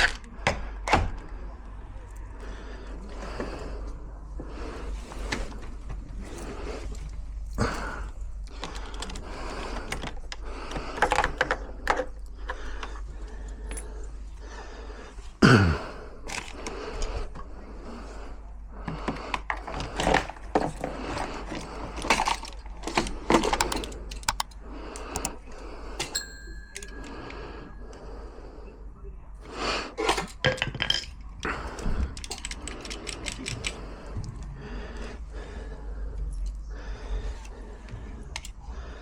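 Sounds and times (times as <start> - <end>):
metal clicks and rattles of lock: 21.5 - 25.4, 32.1 - 33.8.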